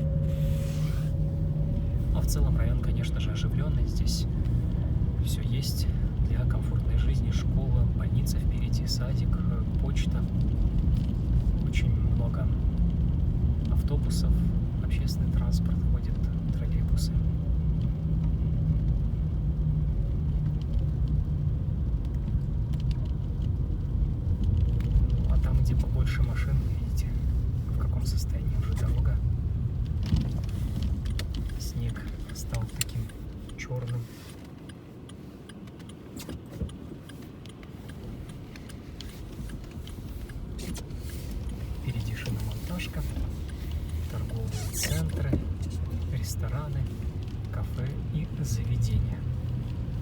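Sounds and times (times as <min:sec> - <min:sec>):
car engine and road rumble: 0:00.0 - 0:50.0
light clicks and rattles: 0:02.1 - 0:50.0
faint ticks: 0:29.8 - 0:49.9.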